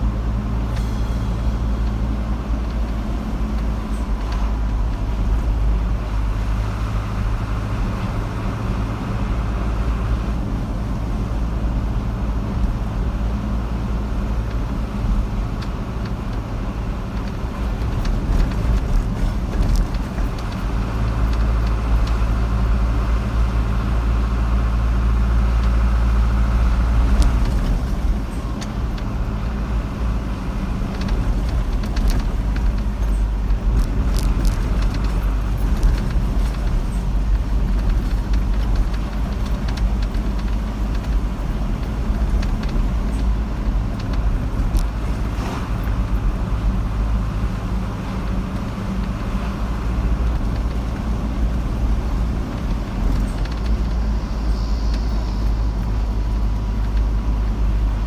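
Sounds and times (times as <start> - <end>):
car engine and road rumble: 0.0 - 58.0
tyre noise: 30.6 - 57.3.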